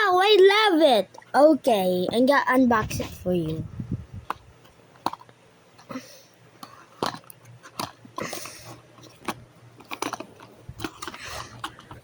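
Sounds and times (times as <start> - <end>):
packaging clicks and taps: 4.2 - 5.9, 6.6 - 12.0
packaging rustling: 6.6 - 12.0.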